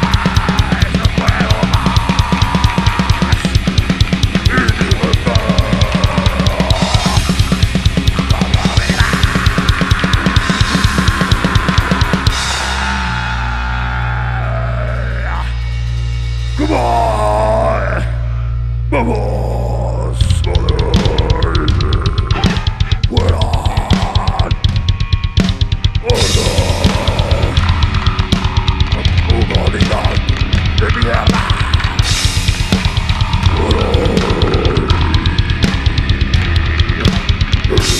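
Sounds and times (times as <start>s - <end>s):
growled vocals: 0.0s - 15.7s, 16.6s - 24.7s, 26.0s - 37.9s
distorted guitar wall: 0.0s - 37.9s
double bass drum strokes: 20.2s - 37.9s.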